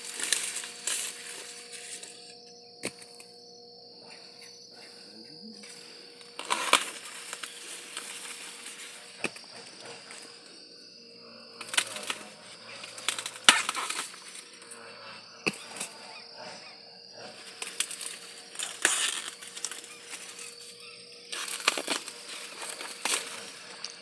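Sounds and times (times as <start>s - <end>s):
corn plants rustling: 0.0s - 3.3s, 4.9s - 10.7s, 11.6s - 14.6s, 17.3s - 24.0s.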